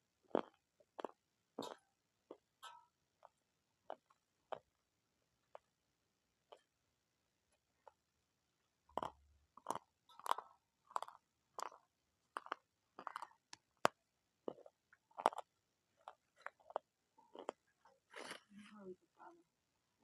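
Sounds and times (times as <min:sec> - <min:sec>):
crunchy food being chewed: 0:00.3 - 0:04.8, 0:08.9 - 0:18.5.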